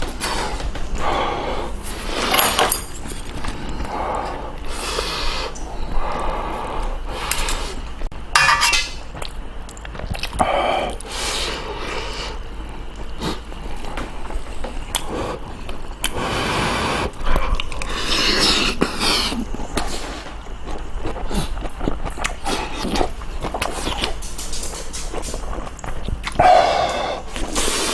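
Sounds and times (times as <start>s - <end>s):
person chewing and slurping: 9.2s - 27.9s.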